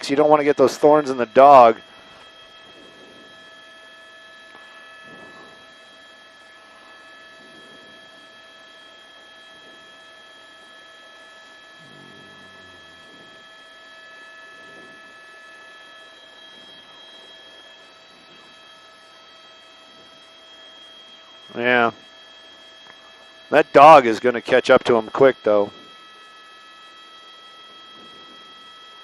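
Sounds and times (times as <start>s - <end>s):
electrical hum and whine: 0.0s - 29.0s
faint murmurs: 11.8s - 13.5s.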